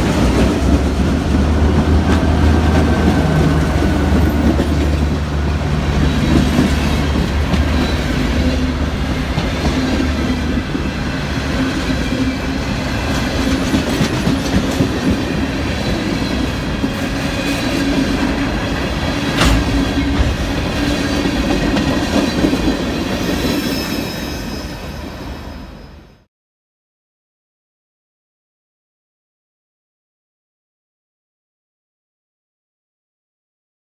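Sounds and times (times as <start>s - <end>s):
train wheels clickety-clack: 0.0s - 25.2s
faint wheel squeal: 23.3s - 26.2s.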